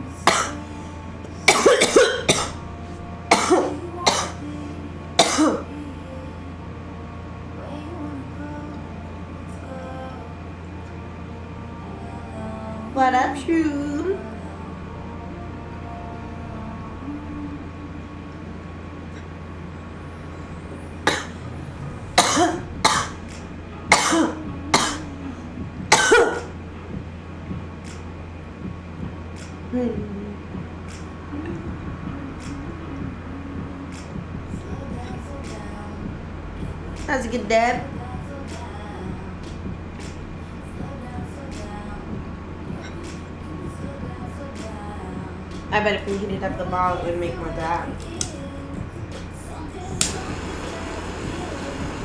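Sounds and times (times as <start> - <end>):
woman coughing: 0.3 - 0.6, 1.5 - 2.6, 3.3 - 4.4, 5.2 - 5.7, 21.1 - 21.4, 22.2 - 23.2, 23.9 - 25.1, 25.9 - 26.5.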